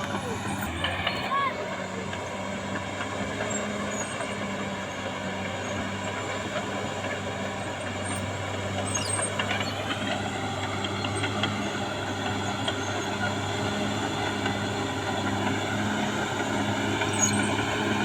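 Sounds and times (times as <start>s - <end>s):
high-pitched squeals: 0.0s - 1.6s
bulldozer diesel engine running: 0.0s - 18.0s.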